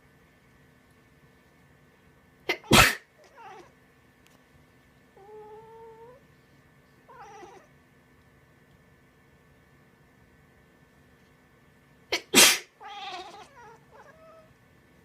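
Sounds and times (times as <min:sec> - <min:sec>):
person sneezing: 0:02.5 - 0:03.1, 0:12.1 - 0:12.7
cat meowing: 0:02.6 - 0:03.7, 0:05.2 - 0:06.2, 0:07.1 - 0:07.7, 0:12.8 - 0:14.5.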